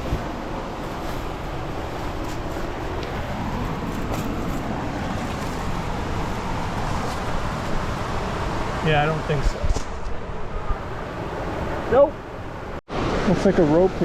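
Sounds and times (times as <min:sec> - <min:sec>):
rushing creek water: 0:00.0 - 0:10.0, 0:12.9 - 0:14.0.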